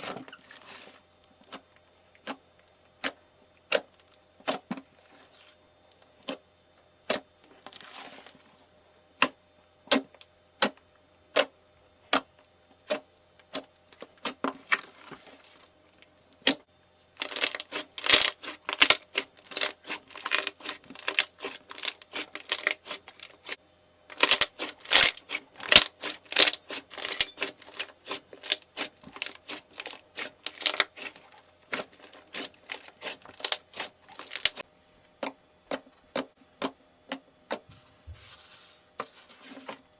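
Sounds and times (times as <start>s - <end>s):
crunchy snapping and crackling: 17.2s - 34.6s.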